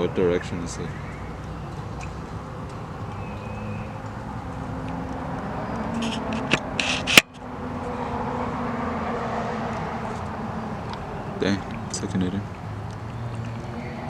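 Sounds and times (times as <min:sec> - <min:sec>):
engine running steadily: 0:00.0 - 0:14.0
scrapes: 0:05.9 - 0:08.0.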